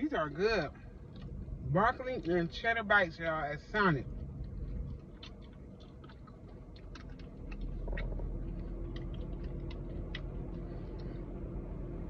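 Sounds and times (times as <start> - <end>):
low hum: 0.0 - 12.0
crunchy chewing: 1.0 - 2.5, 4.0 - 11.7.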